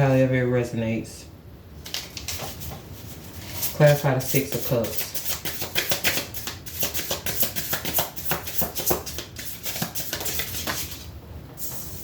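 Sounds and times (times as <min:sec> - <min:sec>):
cards being shuffled: 0:01.8 - 0:02.8, 0:04.4 - 0:11.1.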